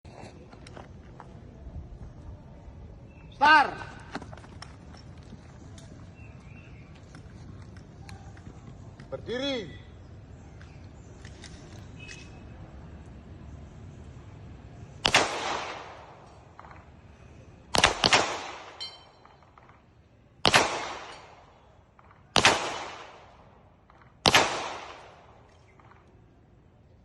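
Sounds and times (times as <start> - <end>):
pistol shots echoing: 15.0 - 16.9, 17.7 - 19.8, 20.4 - 26.0.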